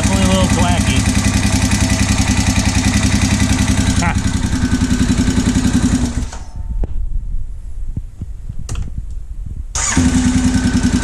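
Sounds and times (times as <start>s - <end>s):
engine knocks: 0.0s - 7.0s
motorcycle engine idling: 0.0s - 7.1s, 9.7s - 11.0s.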